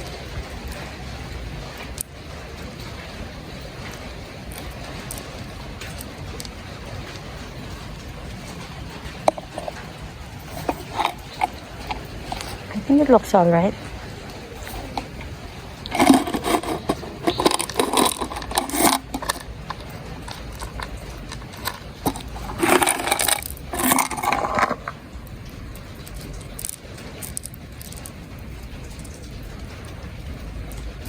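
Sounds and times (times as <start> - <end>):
small stones clattering: 8.6 - 13.4, 14.2 - 25.0, 26.0 - 28.2.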